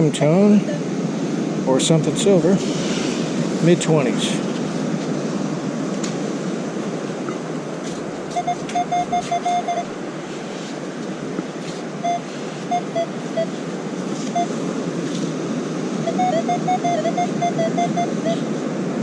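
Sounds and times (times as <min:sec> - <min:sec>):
metal detector beeping: 0:08.3 - 0:10.0, 0:12.0 - 0:14.6, 0:16.0 - 0:18.6.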